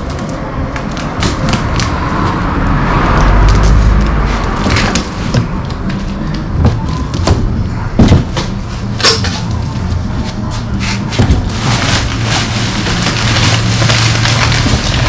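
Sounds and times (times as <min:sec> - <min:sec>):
cardboard box knocks and scrapes: 0:11.1 - 0:12.7.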